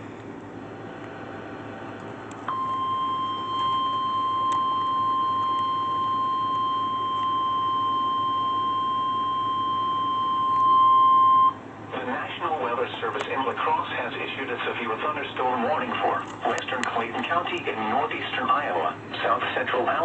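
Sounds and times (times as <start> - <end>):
steady high alert beep: 2.5 - 11.6.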